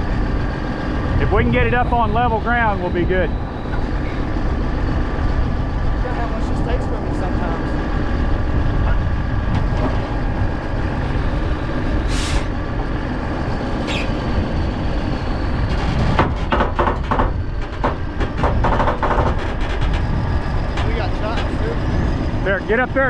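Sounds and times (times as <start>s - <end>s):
truck engine running: 0.0s - 23.0s
wind buffeting microphone: 0.0s - 23.0s
air hiss: 12.1s - 12.5s
knocks and rattles: 15.5s - 21.9s.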